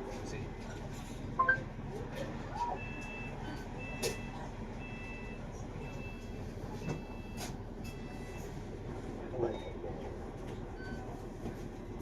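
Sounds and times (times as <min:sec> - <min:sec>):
bus engine humming: 0:00.0 - 0:12.0
electronic warning beeps: 0:02.8 - 0:08.6.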